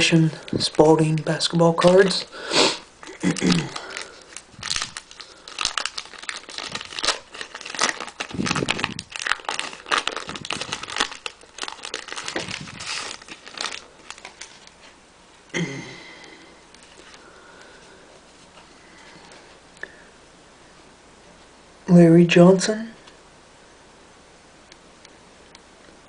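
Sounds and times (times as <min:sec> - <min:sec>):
plastic wrapper tearing and crinkling: 0:00.0 - 0:02.3, 0:03.0 - 0:15.0, 0:16.7 - 0:17.2.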